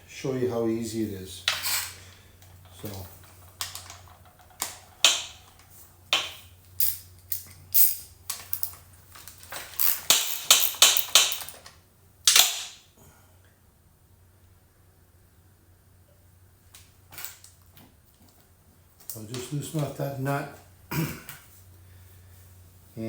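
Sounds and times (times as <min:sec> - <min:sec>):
metallic clicks of hand tools: 0:04.6 - 0:08.8, 0:09.8 - 0:11.7.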